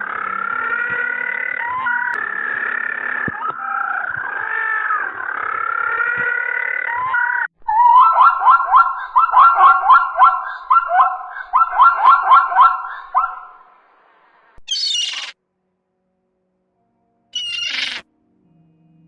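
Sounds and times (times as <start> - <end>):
brief shrill animal call: 14.6 - 15.4, 17.4 - 18.1
animal giving short high calls: 14.7 - 15.4, 17.4 - 18.0.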